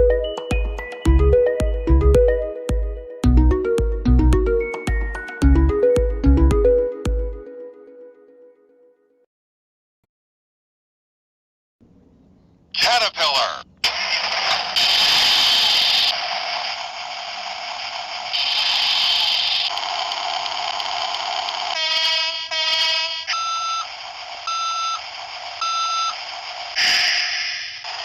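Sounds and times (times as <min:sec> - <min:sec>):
hissy noise bursts: 0:13.8 - 0:22.7
electronic beeps: 0:21.8 - 0:23.9, 0:24.5 - 0:26.2.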